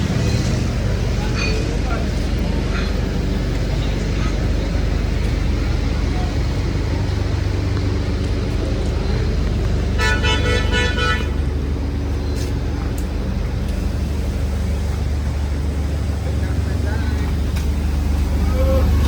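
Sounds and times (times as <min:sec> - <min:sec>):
low engine rumble: 0:00.0 - 0:19.0
street traffic: 0:00.0 - 0:19.0
vehicle horn honking: 0:10.0 - 0:11.4.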